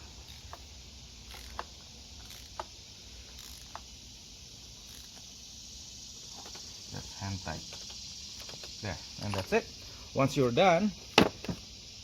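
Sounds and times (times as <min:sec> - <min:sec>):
steady high hiss: 0:00.0 - 0:12.0.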